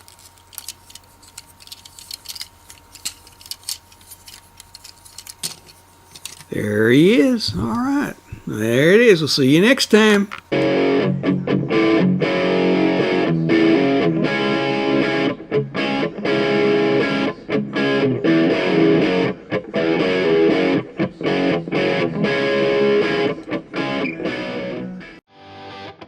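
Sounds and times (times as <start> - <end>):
distorted electric guitar music: 10.2 - 26.0.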